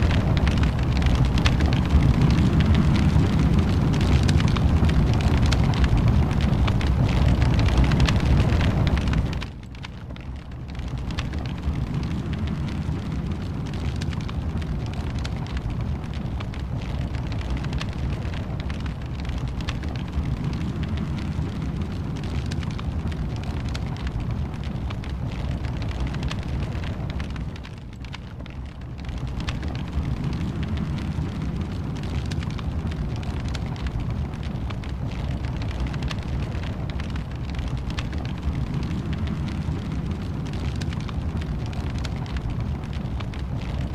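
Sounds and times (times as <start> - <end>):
fire low rumble: 0.0 - 43.9
wood fire crackling and popping: 0.0 - 43.9.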